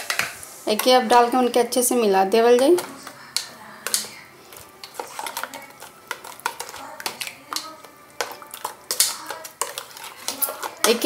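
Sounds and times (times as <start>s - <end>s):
spoon clinking against bowl: 2.8s - 11.0s.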